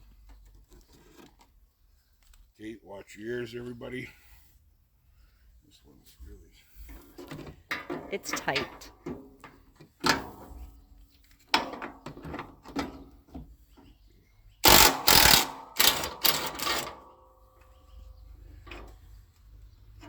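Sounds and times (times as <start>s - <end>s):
power tool bursts: 14.6s - 17.0s.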